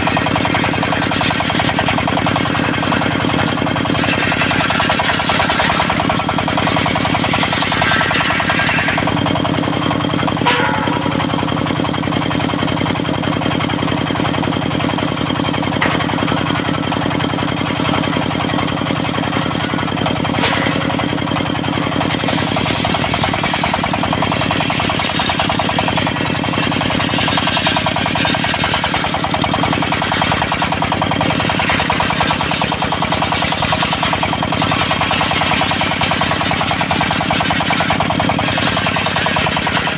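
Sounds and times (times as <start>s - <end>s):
diesel engine knocking: 0.0s - 39.9s.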